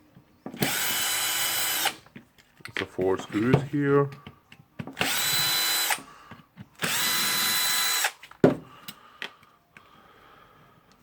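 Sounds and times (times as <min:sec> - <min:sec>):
power drill whining: 0:00.6 - 0:02.1, 0:05.0 - 0:08.3.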